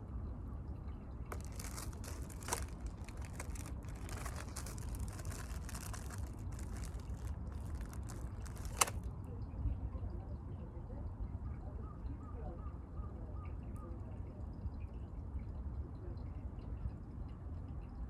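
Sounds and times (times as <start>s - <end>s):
crinkling and rustling: 1.3s - 9.1s.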